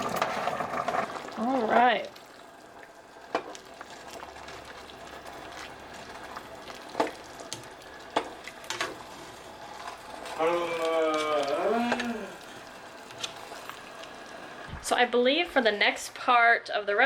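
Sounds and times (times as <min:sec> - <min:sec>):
soup bubbling while stirred: 0:00.0 - 0:16.0.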